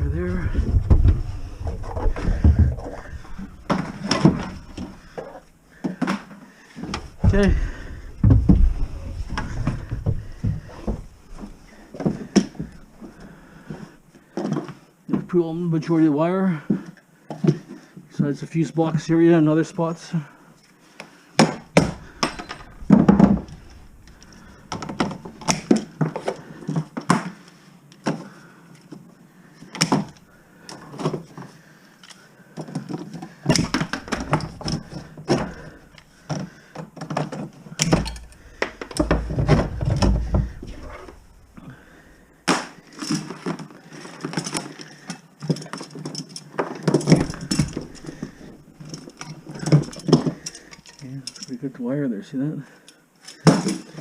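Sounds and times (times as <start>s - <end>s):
low thumps: 0.0s - 5.1s, 6.9s - 11.6s.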